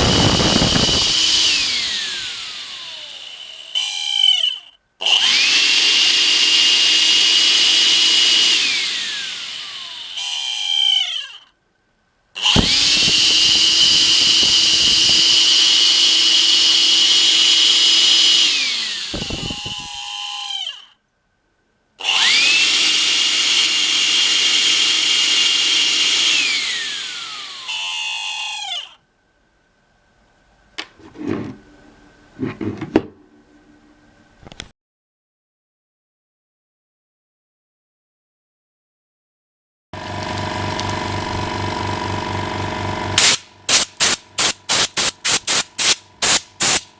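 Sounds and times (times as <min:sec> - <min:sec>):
vacuum cleaner motor whine: 0:00.0 - 0:11.4, 0:12.4 - 0:20.8, 0:22.0 - 0:28.9, 0:40.0 - 0:43.2.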